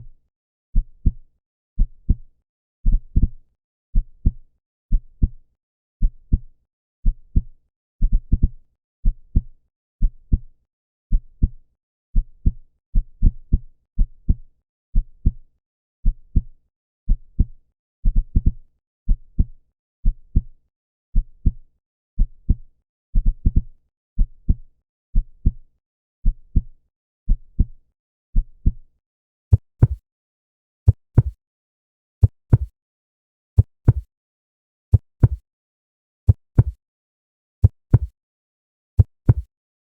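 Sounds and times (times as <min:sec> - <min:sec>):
heartbeat thumps: 0:29.5 - 0:30.0, 0:30.9 - 0:31.4, 0:32.2 - 0:32.7, 0:33.6 - 0:34.1, 0:34.9 - 0:35.4, 0:36.3 - 0:36.8, 0:37.6 - 0:38.1, 0:39.0 - 0:39.5.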